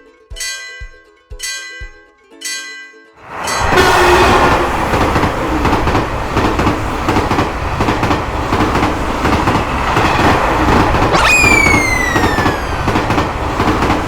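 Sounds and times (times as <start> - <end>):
train wheels rumbling on rails: 3.3 - 14.0
wheels clicking over rail joints: 3.6 - 14.0.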